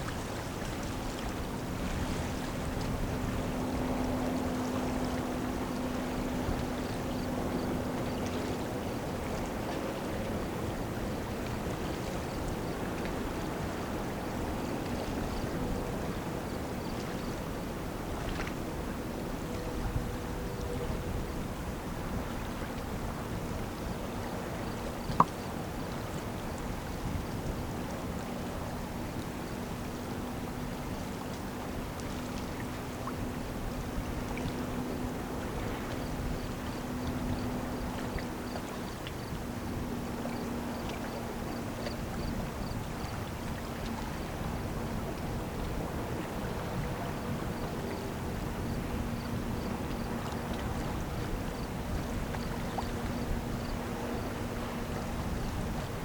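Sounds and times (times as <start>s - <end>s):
low drone of passing freighter: 0.0s - 16.9s
moving river water: 0.0s - 56.0s.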